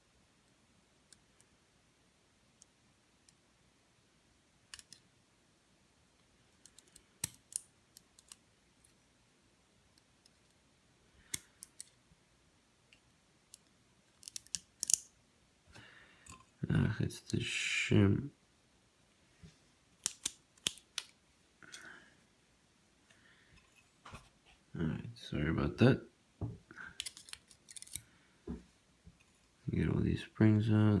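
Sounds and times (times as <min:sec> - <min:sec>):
metal lock parts clicking: 0:13.6 - 0:15.0, 0:20.0 - 0:21.1, 0:27.0 - 0:28.0.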